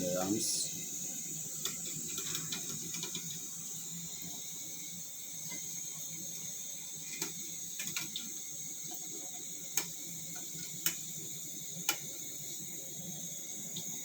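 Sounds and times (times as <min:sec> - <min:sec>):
cooking oil sizzling: 0:00.0 - 0:14.0.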